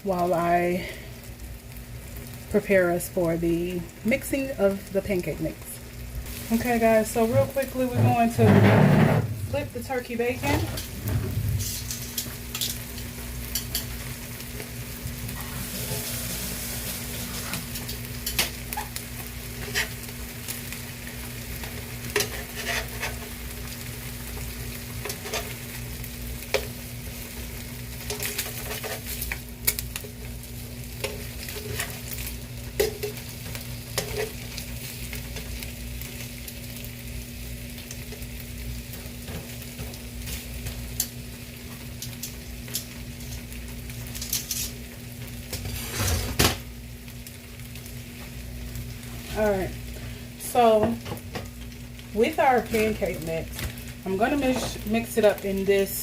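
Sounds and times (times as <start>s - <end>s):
bacon sizzling in a frying pan: 0.0s - 56.0s
utensil scraping a pan: 6.5s - 12.8s, 19.6s - 20.1s, 22.1s - 23.4s, 31.0s - 32.2s, 45.5s - 46.4s.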